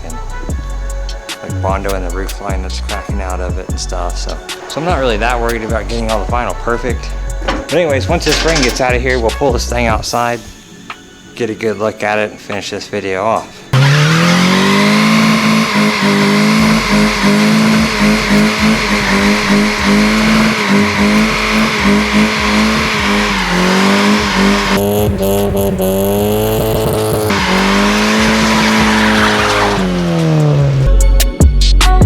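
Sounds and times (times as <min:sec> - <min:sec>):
music: 0:00.0 - 0:13.8, 0:14.5 - 0:32.0
tires squealing: 0:01.7 - 0:10.1, 0:13.7 - 0:31.0
car engine at high revs: 0:13.8 - 0:31.0.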